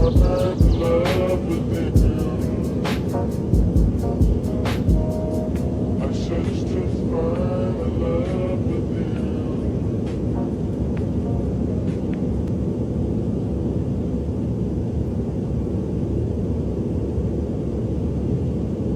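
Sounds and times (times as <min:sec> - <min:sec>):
airliner cabin rumble: 0:00.0 - 0:18.9.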